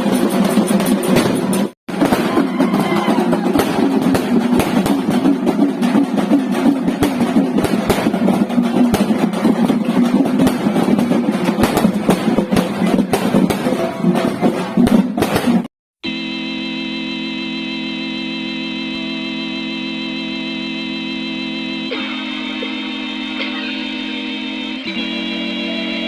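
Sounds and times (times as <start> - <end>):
loud music with drumming: 1.9 - 15.6.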